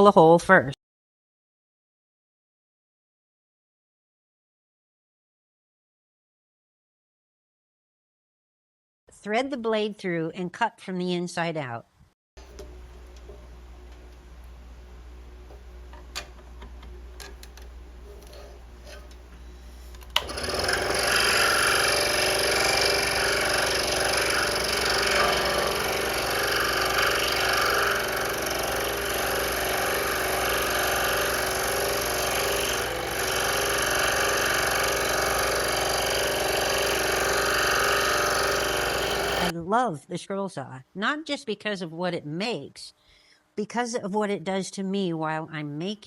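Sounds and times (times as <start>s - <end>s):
scroll saw cutting wood: 20.0s - 39.5s.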